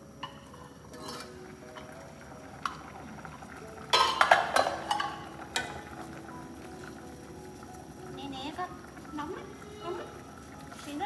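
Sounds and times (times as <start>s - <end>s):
kitchenware clinking and clattering: 0.2s - 1.9s, 3.8s - 5.9s.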